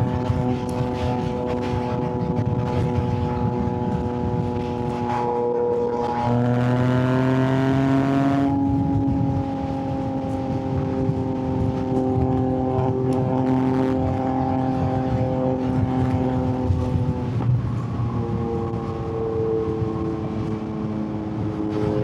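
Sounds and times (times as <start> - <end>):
motorcycle engine: 0.0 - 22.0.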